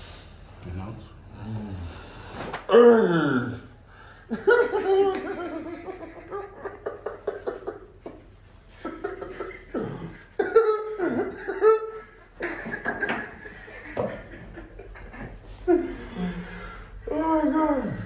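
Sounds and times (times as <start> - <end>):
person laughing: 4.3 - 16.6.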